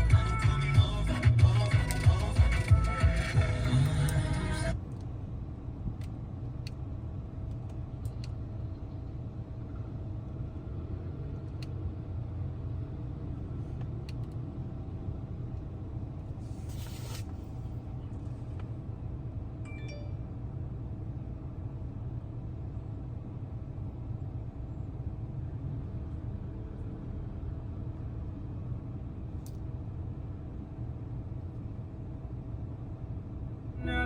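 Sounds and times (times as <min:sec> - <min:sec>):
car engine rumble: 0:00.0 - 0:34.0
brief hiss: 0:16.4 - 0:17.6.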